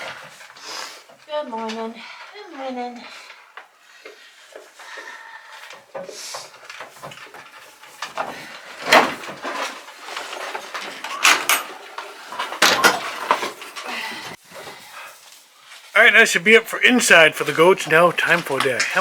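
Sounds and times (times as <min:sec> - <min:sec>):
sharp knocks and rattling: 0:05.9 - 0:14.3.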